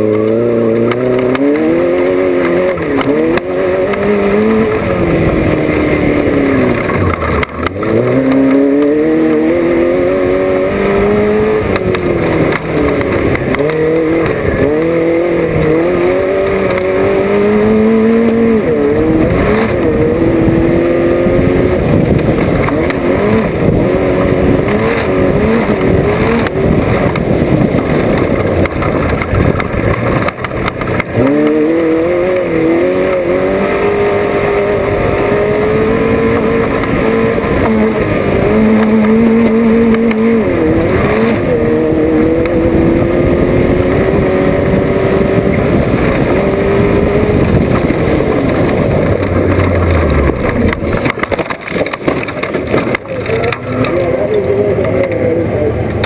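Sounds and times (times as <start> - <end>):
race car engine revving: 0.0 - 56.0
rattling and knocking: 46.4 - 54.0.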